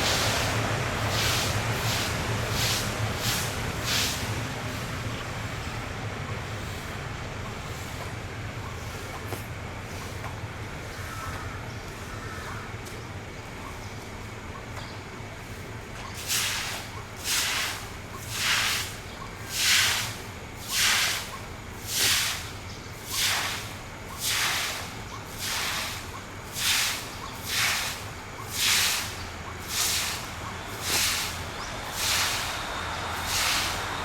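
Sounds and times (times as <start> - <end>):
train coaches whooshing past: 0.0 - 10.9, 24.3 - 34.0.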